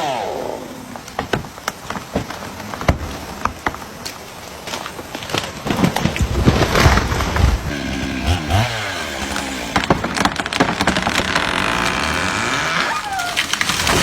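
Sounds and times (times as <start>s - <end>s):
chainsaw engine revving: 7.3s - 14.0s.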